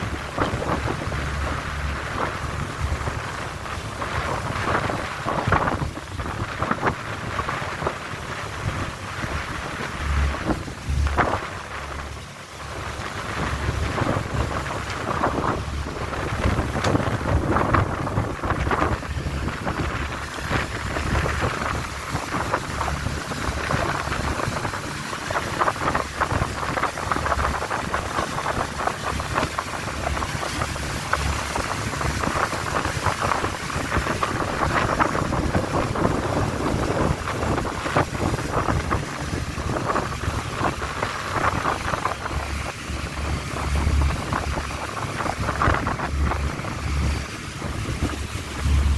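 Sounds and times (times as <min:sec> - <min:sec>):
motorboat engine: 0:00.0 - 0:48.9
rushing water: 0:00.0 - 0:48.9
wind buffeting microphone: 0:00.0 - 0:48.9.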